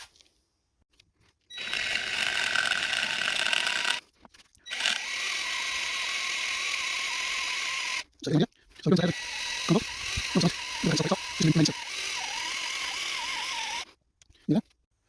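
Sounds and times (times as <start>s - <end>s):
power drill drilling into metal: 1.5s - 4.0s, 4.7s - 8.1s, 9.0s - 13.9s.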